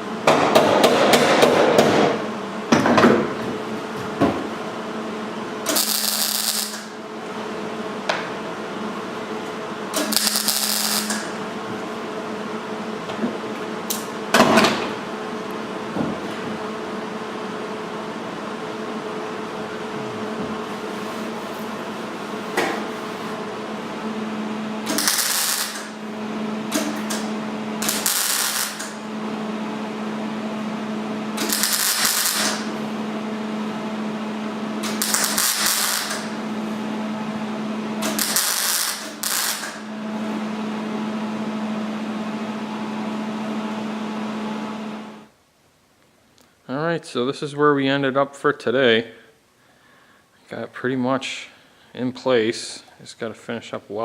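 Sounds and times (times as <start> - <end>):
steady welder hum: 3.6 - 46.2
welding arc crackle: 5.7 - 7.0, 10.0 - 11.4, 24.9 - 26.0, 26.8 - 29.1, 31.4 - 32.8, 34.8 - 36.4, 38.0 - 39.9.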